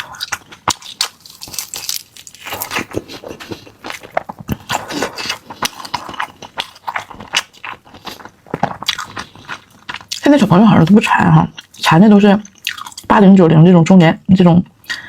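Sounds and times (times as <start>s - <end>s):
crisp chicken skin crunching: 0.0s - 10.1s
biting and chewing: 0.0s - 11.0s.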